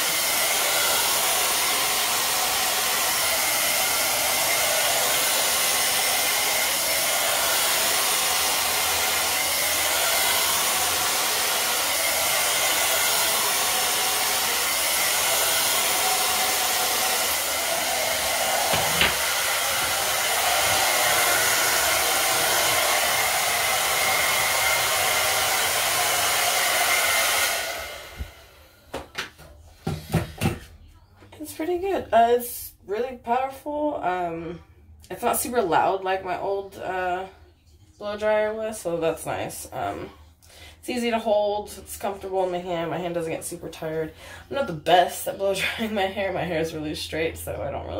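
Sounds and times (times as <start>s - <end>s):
blow-dryer running: 0.0s - 29.1s.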